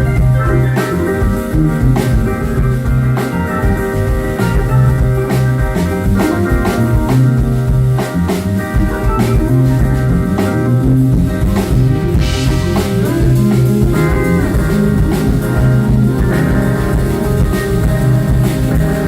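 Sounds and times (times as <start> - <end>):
bass guitar: 0.0 - 19.0
drum kit: 0.0 - 19.0
electric guitar: 0.0 - 19.0
guitar note sliding up: 8.6 - 19.0.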